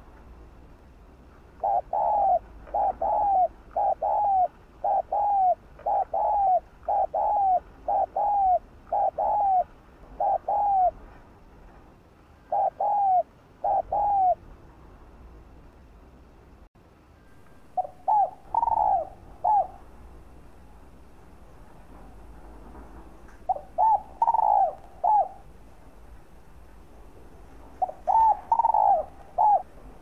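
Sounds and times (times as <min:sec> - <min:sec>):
dove cooing: 0:01.6 - 0:11.1, 0:12.4 - 0:14.4, 0:17.8 - 0:20.3, 0:23.3 - 0:25.7, 0:27.6 - 0:30.0.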